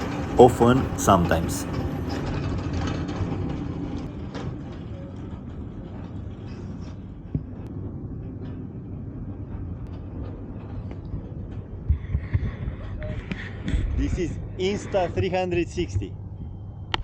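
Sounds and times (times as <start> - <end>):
ship engines rumbling: 0.0 - 2.9.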